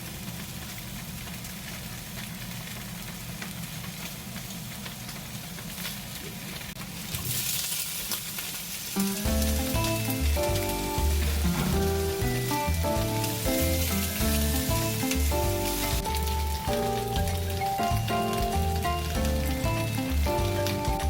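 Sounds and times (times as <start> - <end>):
food sizzling in a frying pan: 0.0 - 21.0
background music: 9.0 - 21.0.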